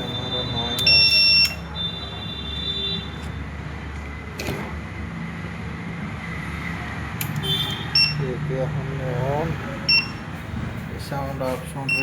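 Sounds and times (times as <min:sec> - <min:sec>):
buzzer beeping: 0:00.0 - 0:02.7, 0:07.4 - 0:08.3, 0:09.9 - 0:10.3.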